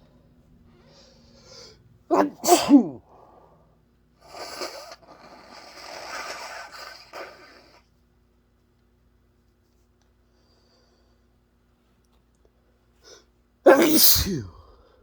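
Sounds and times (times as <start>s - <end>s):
person sneezing: 2.1s - 3.1s, 13.7s - 14.8s
noisy breathing: 3.0s - 7.8s.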